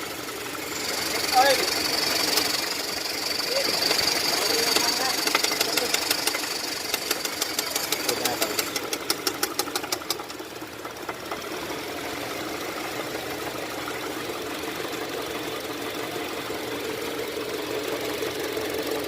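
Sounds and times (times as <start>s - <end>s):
engine running with rapid knock: 0.0s - 19.0s.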